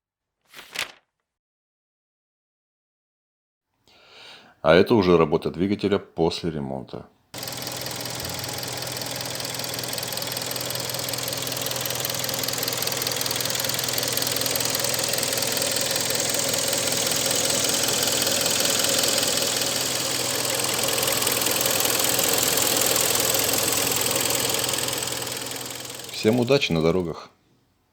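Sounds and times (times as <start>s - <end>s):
car engine running steadily: 7.4s - 27.0s.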